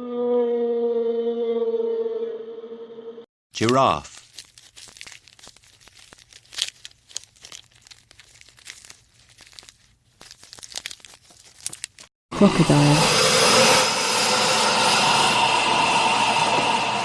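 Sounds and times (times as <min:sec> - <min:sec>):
crunching and crackling clicks: 0:03.5 - 0:12.1
tearing noises: 0:03.6 - 0:12.1.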